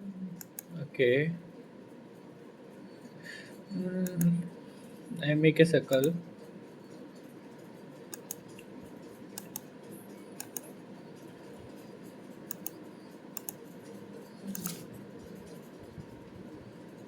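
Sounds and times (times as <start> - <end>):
faint steady hum: 0.0 - 17.0
computer mouse clicking: 0.4 - 0.7, 4.0 - 4.4, 5.9 - 6.2, 8.0 - 9.7, 10.4 - 15.8.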